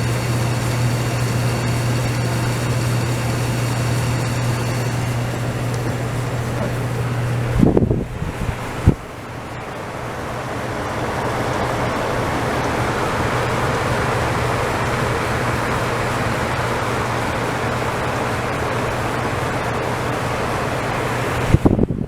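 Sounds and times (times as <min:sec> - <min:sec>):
clothes dryer running: 0:00.0 - 0:22.0.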